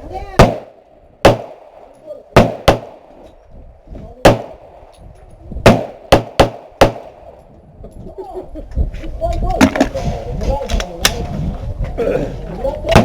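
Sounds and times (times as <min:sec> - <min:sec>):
gunshots: 0:00.4 - 0:03.2, 0:04.2 - 0:04.9, 0:05.6 - 0:07.4.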